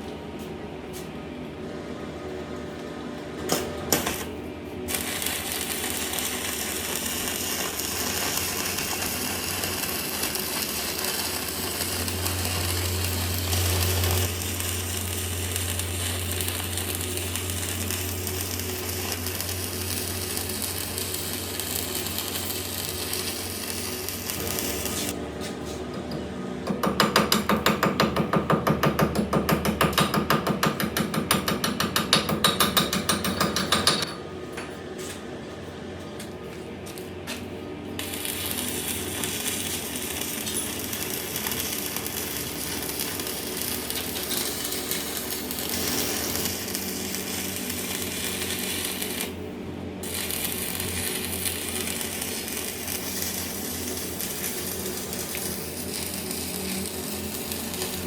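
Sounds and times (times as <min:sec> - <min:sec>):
arc welding crackling hiss: 0:03.5 - 0:25.7, 0:36.9 - 0:58.0
hammer strikes on metal: 0:26.0 - 0:34.2.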